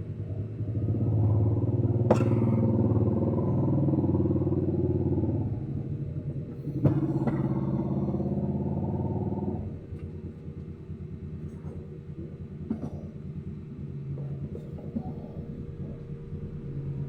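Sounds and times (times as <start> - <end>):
engine rumbling: 0.0 - 17.0.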